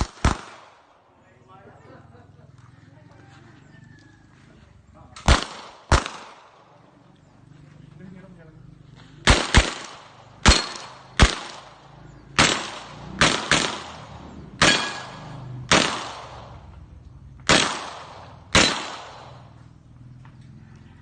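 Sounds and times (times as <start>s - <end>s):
gunshots with echoing tail: 0.0s - 1.1s, 5.2s - 6.8s, 9.2s - 16.8s, 17.4s - 19.7s.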